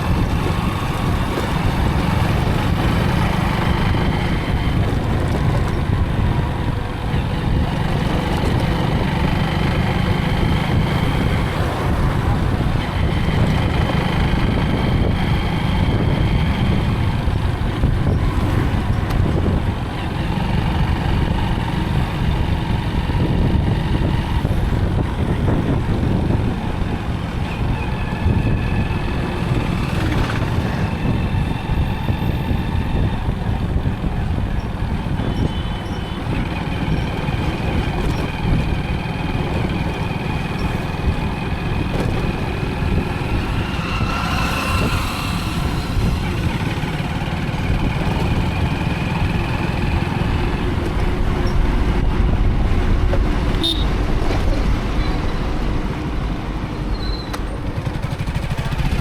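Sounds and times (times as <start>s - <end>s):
motorcycle engine rumble: 0.0s - 59.0s
passing traffic: 0.0s - 59.0s
wind on microphone: 0.0s - 59.0s
vehicle horns: 42.3s - 47.5s, 53.6s - 54.1s.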